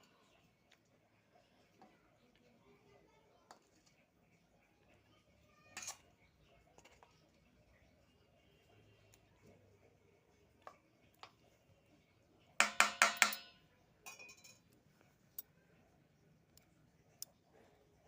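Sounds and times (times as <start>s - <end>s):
metallic utensil strikes: 12.6s - 13.6s.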